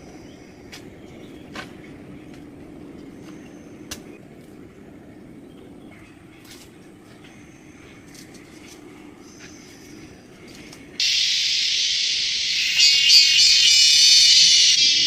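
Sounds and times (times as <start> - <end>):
high-pitched insect chorus: 11.0 - 15.0
low hum: 11.0 - 15.0.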